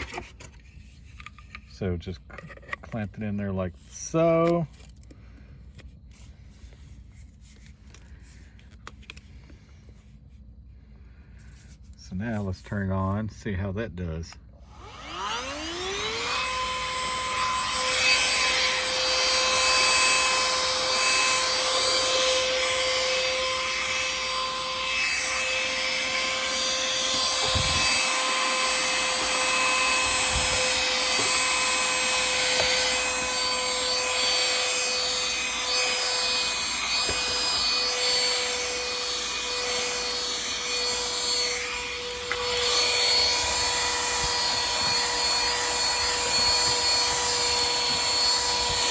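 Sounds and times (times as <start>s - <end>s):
handheld vacuum motor whine: 0.0s - 13.2s, 14.3s - 48.9s
rushing suction noise: 14.9s - 48.9s.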